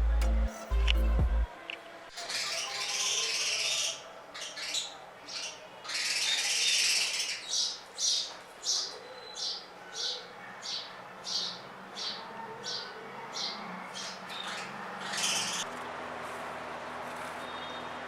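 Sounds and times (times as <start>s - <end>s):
small birds chirping: 2.2s - 15.7s.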